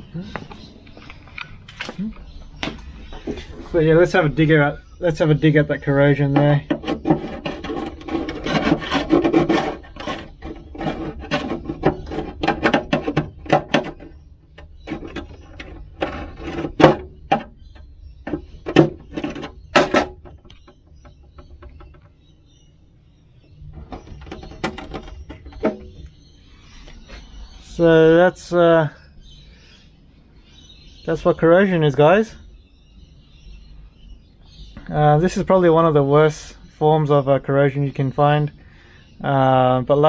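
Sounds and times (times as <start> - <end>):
hand tool scraping metal: 6.1 - 22.0, 23.8 - 26.1.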